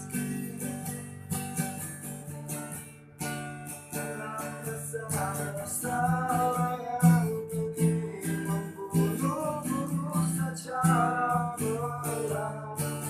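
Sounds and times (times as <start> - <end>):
person singing: 0.0 - 1.4, 4.0 - 13.0
acoustic guitar strumming: 0.0 - 13.0.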